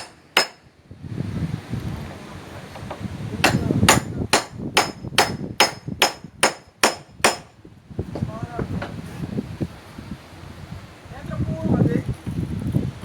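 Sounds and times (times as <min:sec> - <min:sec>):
hammer blows with ringing tone: 0:03.4 - 0:07.5.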